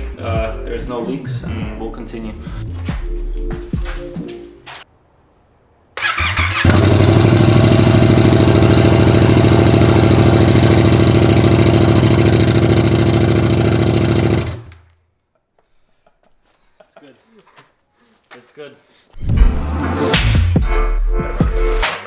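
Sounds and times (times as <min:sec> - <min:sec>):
motorcycle engine starting and idling: 0:06.0 - 0:14.9.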